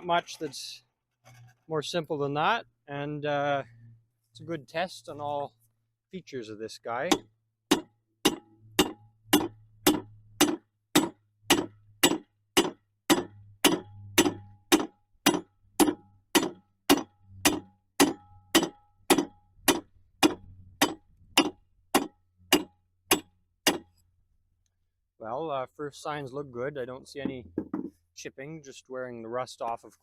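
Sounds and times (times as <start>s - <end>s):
hammer striking metal anvil: 7.1s - 23.9s.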